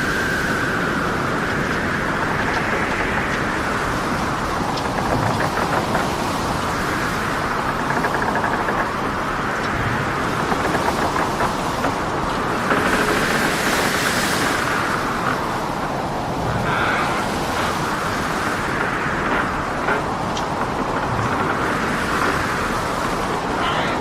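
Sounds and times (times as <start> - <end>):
breaking waves: 0.0 - 24.0
heavy wind roar: 0.0 - 24.0.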